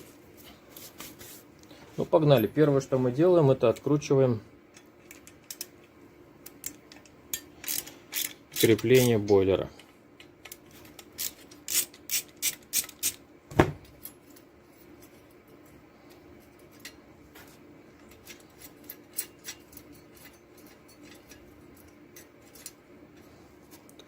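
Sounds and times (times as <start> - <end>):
wrench metal clicks: 6.4 - 13.2.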